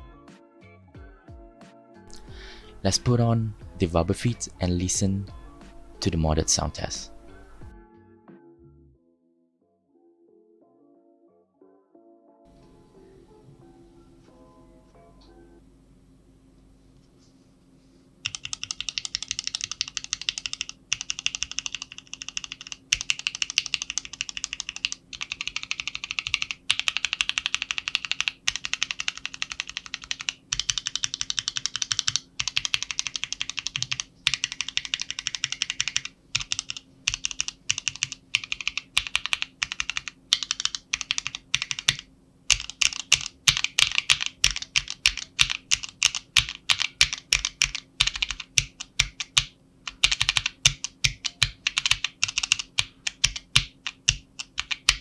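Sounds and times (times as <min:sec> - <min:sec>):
mechanical keyboard keystrokes: 0:02.1 - 0:07.7, 0:18.2 - 0:55.0.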